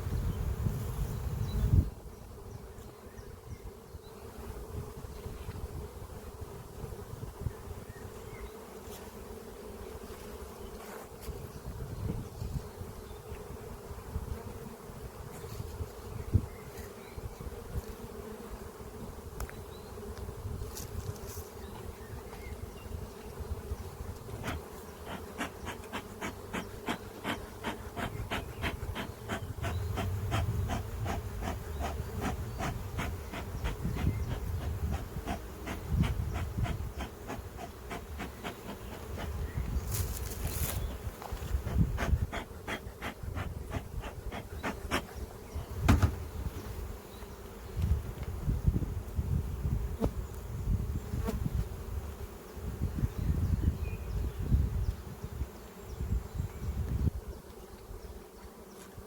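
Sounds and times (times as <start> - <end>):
bees buzzing: 12.6 - 47.8.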